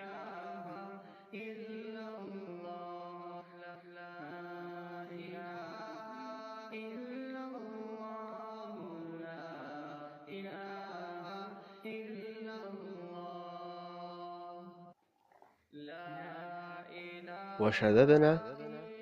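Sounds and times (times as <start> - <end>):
person chanting slowly: 15.9 - 19.0.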